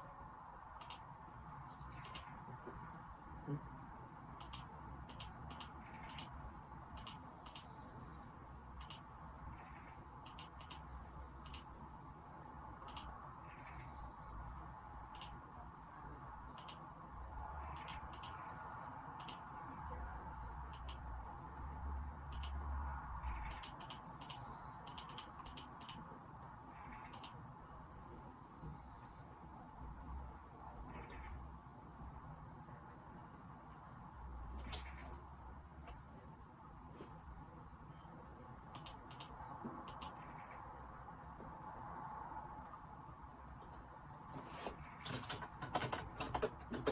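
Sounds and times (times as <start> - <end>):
keyboard and mouse clicks: 0.7 - 1.1, 1.9 - 2.5, 4.4 - 7.8, 8.8 - 9.1, 10.2 - 11.8, 12.8 - 13.2, 15.1 - 15.4, 16.5 - 16.9, 17.6 - 20.0, 20.7 - 21.1, 22.2 - 22.7, 23.4 - 26.1, 27.0 - 27.4, 34.5 - 35.2, 38.7 - 40.5, 42.6 - 46.9.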